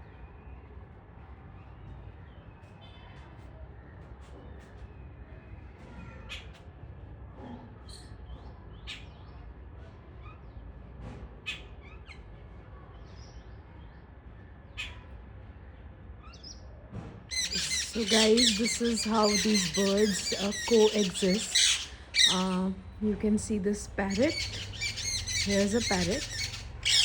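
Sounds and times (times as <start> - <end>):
birds chirping: 17.3 - 27.0
low steady rumble: 17.6 - 27.0.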